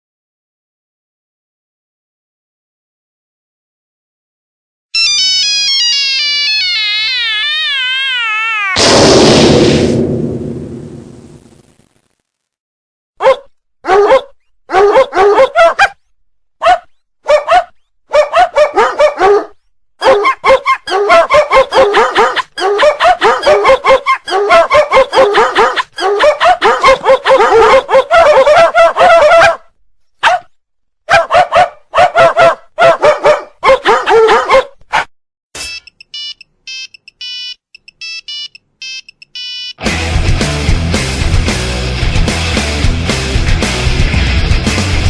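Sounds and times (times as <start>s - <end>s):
dog barking ringtone: 13.2s - 16.0s, 16.6s - 29.6s, 30.2s - 30.5s, 31.1s - 34.7s.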